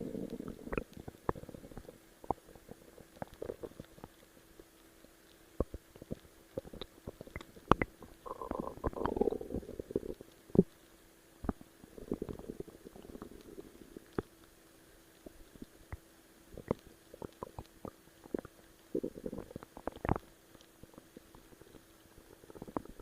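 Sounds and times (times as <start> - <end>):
stomach gurgling and rumbling: 0.0 - 4.8, 5.5 - 10.8, 11.4 - 14.4, 15.2 - 23.0
faint steady hum: 0.0 - 23.0
sharp pops and squelches: 5.6 - 10.8.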